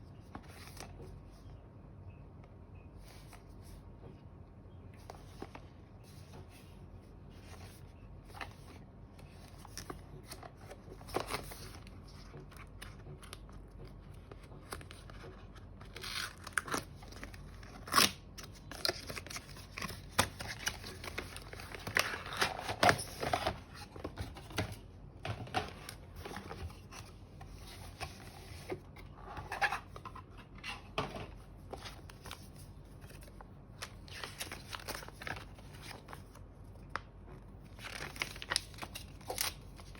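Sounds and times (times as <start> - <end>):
wrapping rustling and tearing: 37.7 - 39.9.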